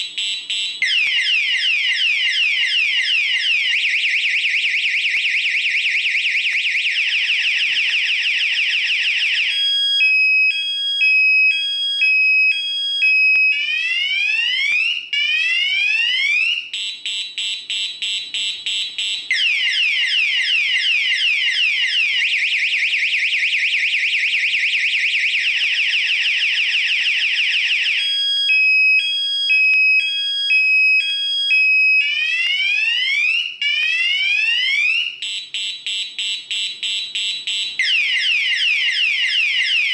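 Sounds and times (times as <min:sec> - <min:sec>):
electronic alarm siren: 0:00.0 - 0:39.9.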